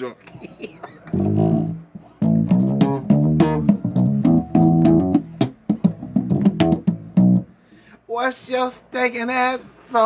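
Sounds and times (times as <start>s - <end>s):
electric bass guitar riff: 1.1s - 7.6s.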